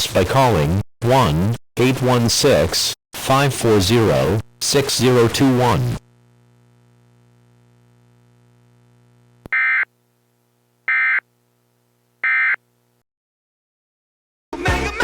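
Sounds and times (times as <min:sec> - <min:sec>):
buzzing data tone bursts: 0:09.5 - 0:09.9, 0:10.9 - 0:11.2, 0:12.2 - 0:12.6
music: 0:14.5 - 0:15.0.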